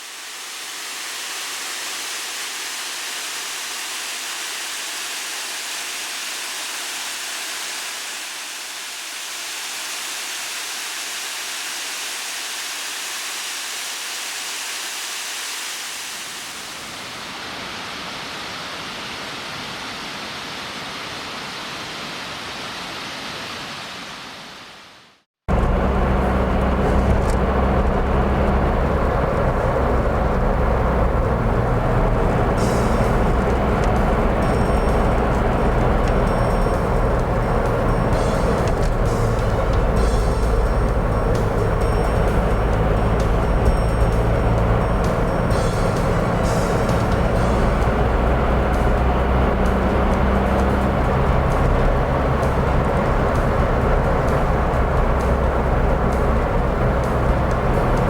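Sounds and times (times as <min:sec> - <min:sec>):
vehicle engine hum: 0:25.5 - 0:58.0.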